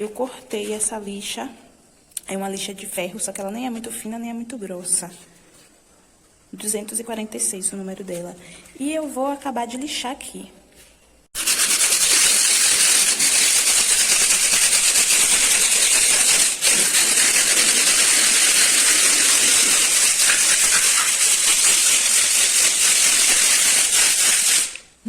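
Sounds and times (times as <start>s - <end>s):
sandpaper rasping on metal: 11.4s - 24.8s.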